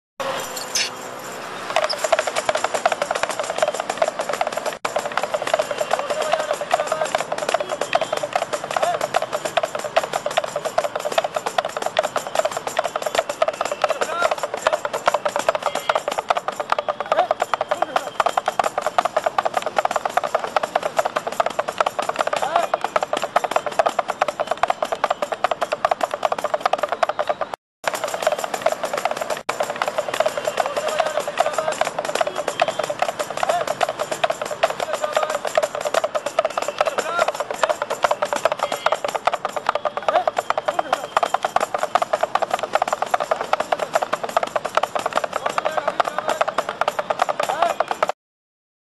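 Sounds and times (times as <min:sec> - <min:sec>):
small drum rattling rhythm: 0:01.7 - 0:48.2
drum beaten fast: 0:27.9 - 0:48.0.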